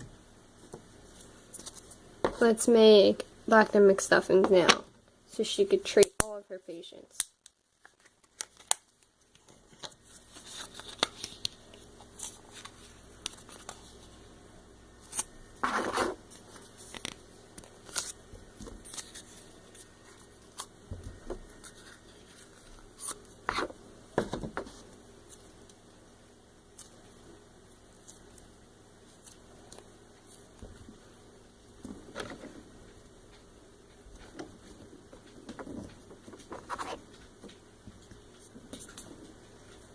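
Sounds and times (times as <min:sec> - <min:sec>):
rustling scrapes: 0:15.6 - 0:16.9.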